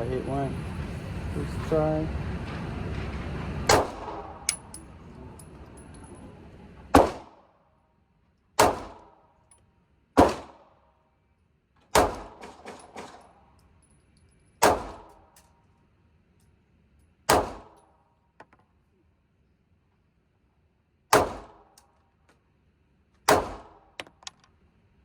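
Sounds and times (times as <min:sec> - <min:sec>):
pistol shots with echo: 0:03.7 - 0:04.6, 0:06.9 - 0:07.4, 0:08.6 - 0:09.2, 0:10.2 - 0:10.7, 0:11.9 - 0:13.2, 0:14.6 - 0:15.1, 0:17.3 - 0:17.8, 0:21.1 - 0:21.7, 0:23.3 - 0:23.9.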